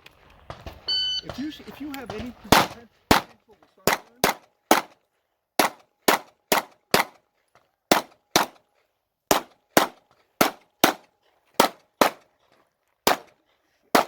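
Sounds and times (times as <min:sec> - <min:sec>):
pistol shots echoing: 0:01.3 - 0:05.0, 0:05.6 - 0:07.2, 0:07.9 - 0:08.6, 0:09.3 - 0:12.2, 0:13.0 - 0:14.0.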